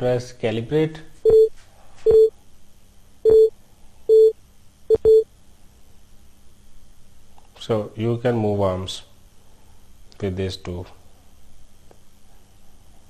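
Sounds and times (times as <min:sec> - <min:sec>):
short electronic beeps: 0:03.3 - 0:03.5, 0:04.1 - 0:05.3.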